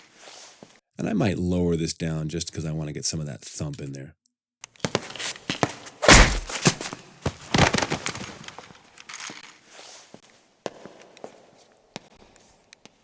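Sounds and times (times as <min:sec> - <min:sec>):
foley knocks and thuds: 0:05.6 - 0:08.7.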